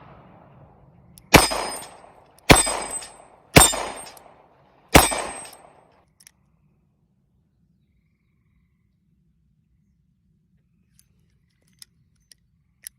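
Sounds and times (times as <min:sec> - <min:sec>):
revolver shots echoing: 0:00.0 - 0:05.8.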